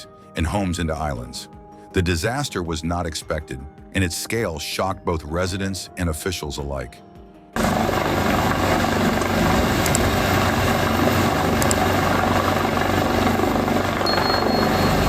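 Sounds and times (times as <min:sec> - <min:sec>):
helicopter rotor beating: 0:07.6 - 0:15.0.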